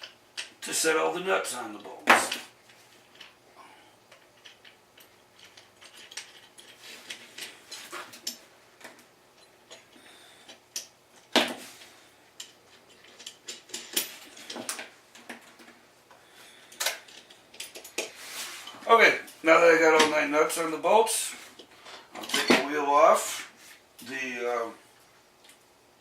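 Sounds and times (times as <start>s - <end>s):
small metal clicks and clinks: 4.1s - 11.3s, 12.4s - 15.8s, 16.7s - 18.1s.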